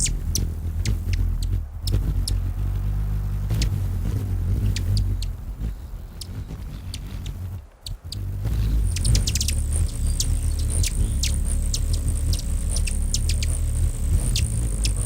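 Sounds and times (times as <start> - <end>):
high chip calls: 0.0 - 2.0, 6.2 - 15.0
hummingbird wings humming: 0.0 - 15.0.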